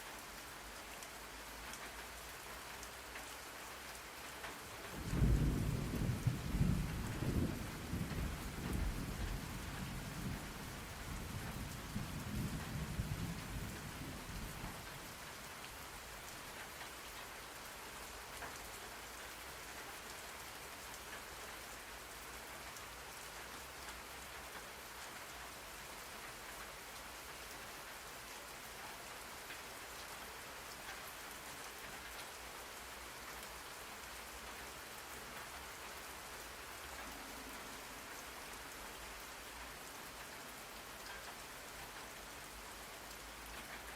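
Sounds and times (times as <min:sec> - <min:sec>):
steady rain hiss: 0:00.0 - 0:43.9
low rumble of thunder: 0:04.9 - 0:15.2.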